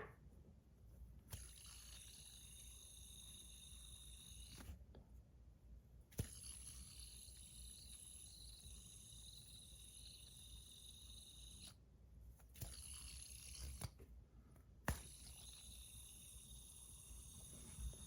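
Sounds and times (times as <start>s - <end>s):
fidget spinner clicks: 1.3s - 4.8s, 12.5s - 14.0s, 14.9s - 17.4s.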